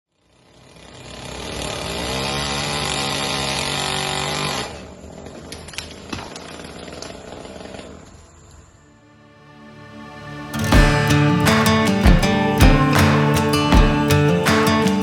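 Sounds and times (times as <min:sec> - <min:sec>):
chainsaw running: 0:00.2 - 0:05.4.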